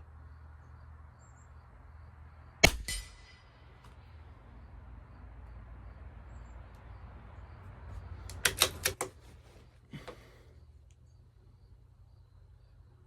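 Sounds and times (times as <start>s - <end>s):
rifle bolt clicking: 8.3s - 9.2s.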